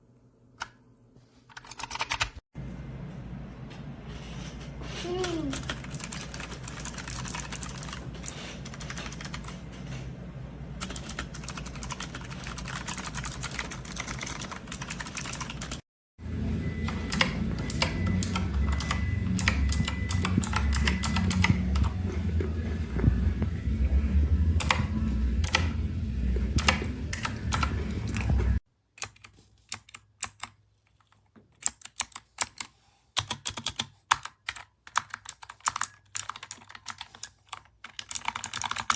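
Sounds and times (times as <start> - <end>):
clicky keyboard typing: 1.5 - 2.4, 10.8 - 15.8, 16.8 - 23.2, 24.6 - 25.8, 26.4 - 38.9
loud low hum: 16.2 - 28.6.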